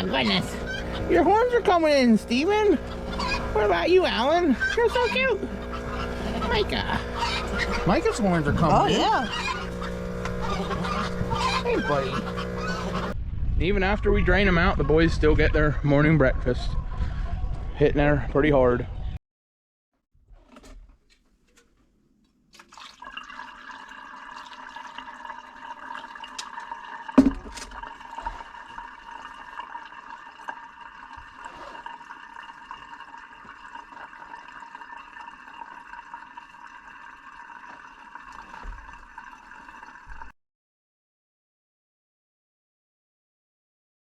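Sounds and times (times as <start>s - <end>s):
milk pouring into a container: 0.0s - 13.2s, 22.6s - 40.3s.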